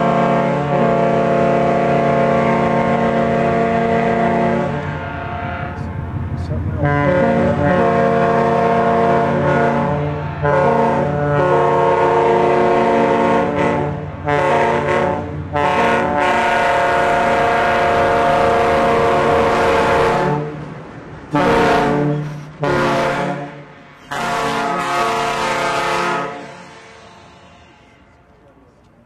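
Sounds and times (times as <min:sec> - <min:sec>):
air horn blasts: 0:00.0 - 0:05.9, 0:06.8 - 0:20.6, 0:21.3 - 0:28.4.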